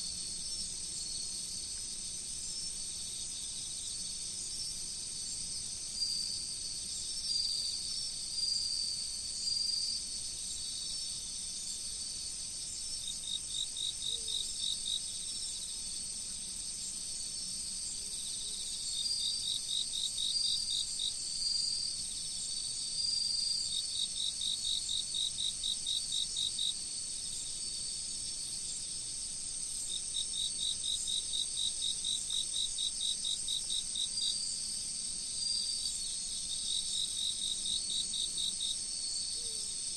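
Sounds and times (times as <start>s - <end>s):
cricket chirps: 0.0s - 39.9s.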